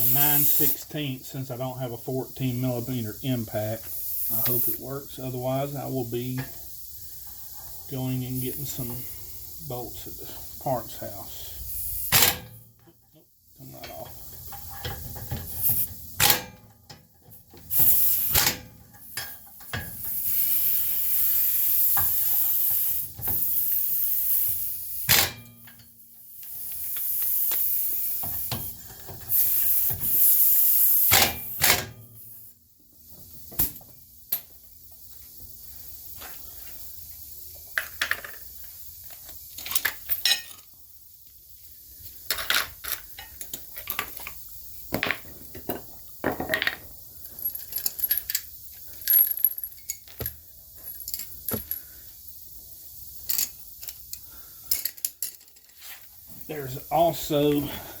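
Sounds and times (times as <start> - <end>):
metal clicks of bolts and tools: 47.5 - 51.9, 53.2 - 55.8.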